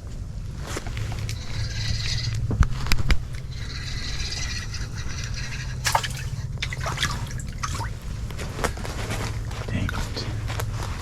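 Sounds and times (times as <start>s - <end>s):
low steady hum: 0.0s - 11.0s
water splashing and dripping: 5.7s - 9.6s.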